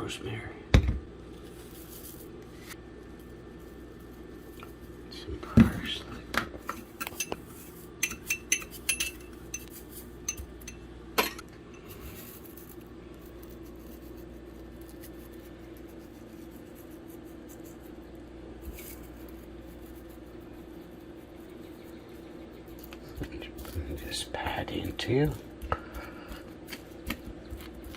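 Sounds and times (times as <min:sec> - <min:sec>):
steady low hum: 0:00.0 - 0:27.9
spice containers clinking: 0:06.6 - 0:12.8.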